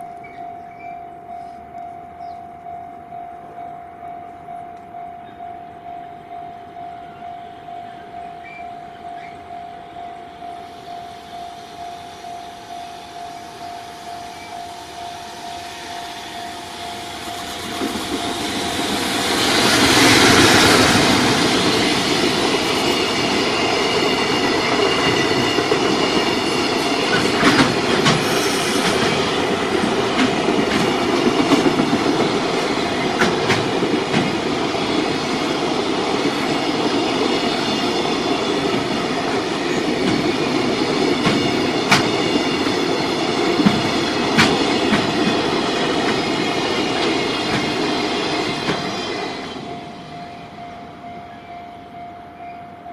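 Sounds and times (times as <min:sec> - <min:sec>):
electric locomotive passing: 0:00.0 - 0:52.9
level-crossing warning bell: 0:00.0 - 0:52.9
wheels clicking over rail joints: 0:24.5 - 0:35.4, 0:38.6 - 0:49.0.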